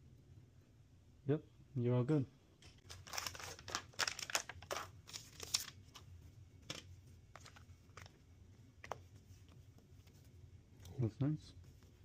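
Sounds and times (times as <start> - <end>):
rustling crinkling handling: 2.6 - 12.0.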